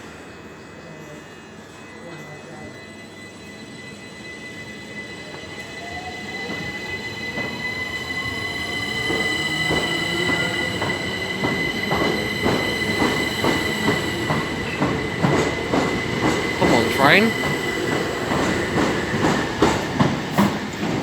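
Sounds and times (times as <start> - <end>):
train wheels clicking over rail joints: 9.1 - 21.0.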